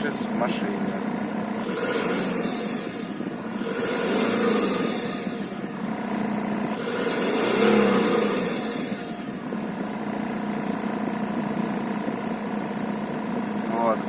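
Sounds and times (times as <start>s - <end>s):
diesel engine revving: 1.4s - 11.1s
turbocharger whistle: 1.6s - 9.7s.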